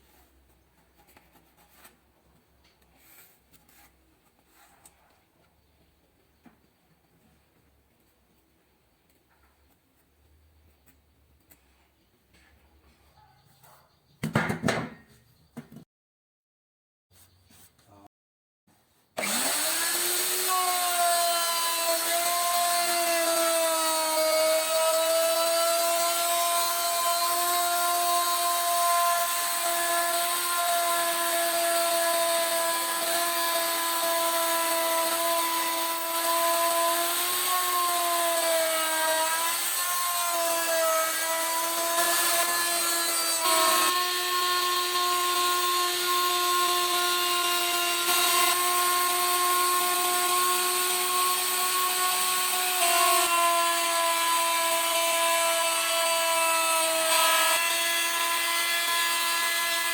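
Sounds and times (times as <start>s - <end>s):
circular saw whining: 19.2s - 59.9s.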